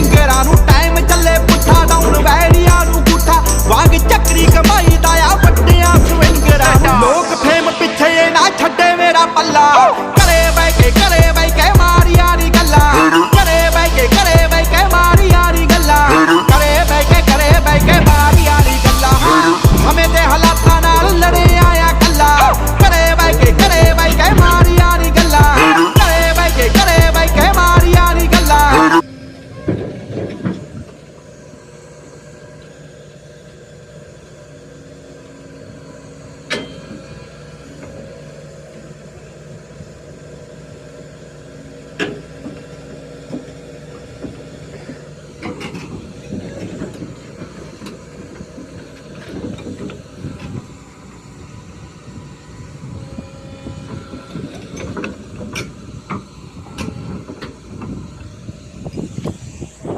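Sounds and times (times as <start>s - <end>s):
excavator diesel engine running: 0.0s - 59.9s
sharp metallic clanks: 36.5s - 37.1s.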